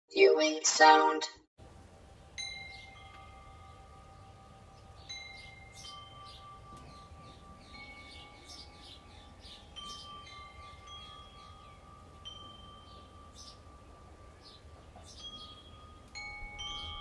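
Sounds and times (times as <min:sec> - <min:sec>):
low rumble of wind: 0:01.6 - 0:17.0
wind chimes ringing: 0:02.2 - 0:17.0
birds chirping: 0:02.7 - 0:15.9.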